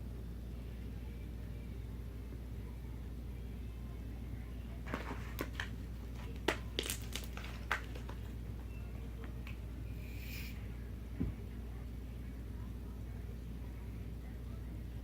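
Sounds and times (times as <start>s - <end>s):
short hiss: 10.0s - 10.6s.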